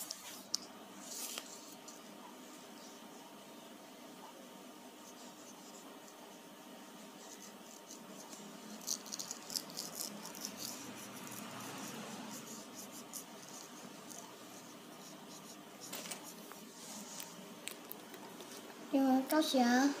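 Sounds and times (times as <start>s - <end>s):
scratchy colouring strokes on paper: 4.9s - 17.4s.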